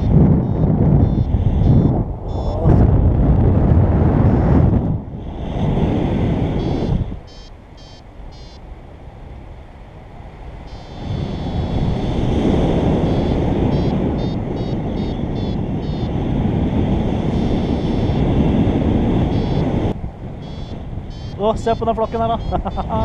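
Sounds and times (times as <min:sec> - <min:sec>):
short high rapid beeps: 0:00.0 - 0:02.7, 0:06.6 - 0:08.6, 0:10.7 - 0:11.9, 0:13.0 - 0:16.2, 0:17.3 - 0:18.3, 0:19.3 - 0:19.7, 0:20.4 - 0:23.0
wind buffeting microphone: 0:00.0 - 0:23.0.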